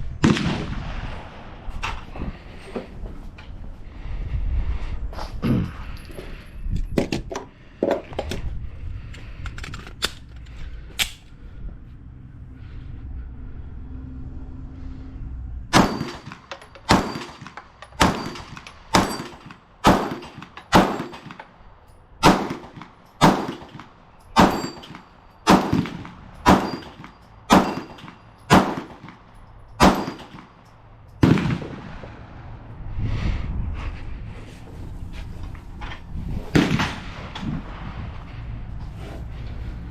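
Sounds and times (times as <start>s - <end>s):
light handling clicks: 9.1s - 11.4s
pistol shots: 15.7s - 21.4s, 22.2s - 29.2s, 29.8s - 30.6s, 31.2s - 32.1s.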